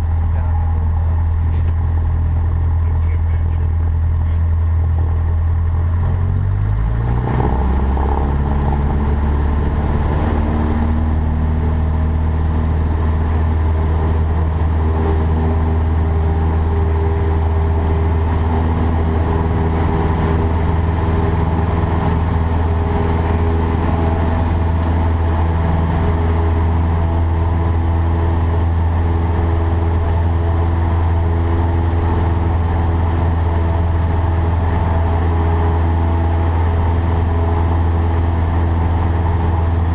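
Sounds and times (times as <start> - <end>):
airplane engine drone in cockpit: 0.0 - 39.9.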